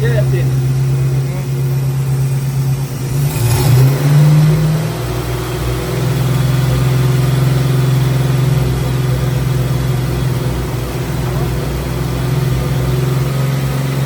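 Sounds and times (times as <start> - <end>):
car engine idling and revving: 0.0 - 14.0.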